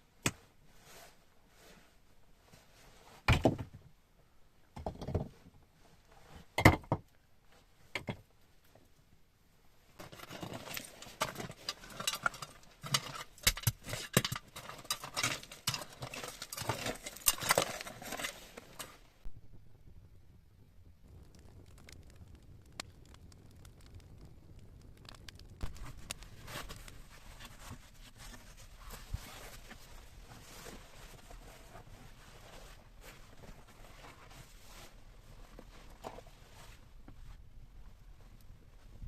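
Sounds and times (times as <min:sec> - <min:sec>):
clattering and rustling: 0:10.0 - 0:19.1.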